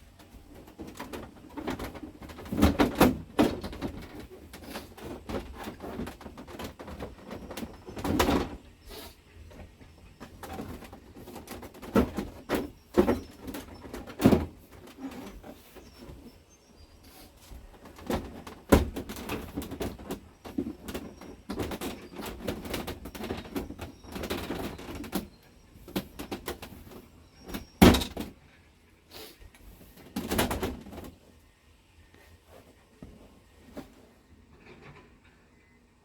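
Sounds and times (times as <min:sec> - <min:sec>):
parts clicking and rustling: 0:00.1 - 0:08.8, 0:09.4 - 0:16.3, 0:17.4 - 0:28.6.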